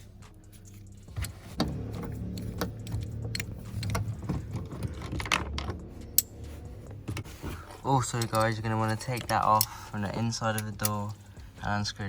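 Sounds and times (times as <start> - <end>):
low handling rumble: 0.0 - 12.0.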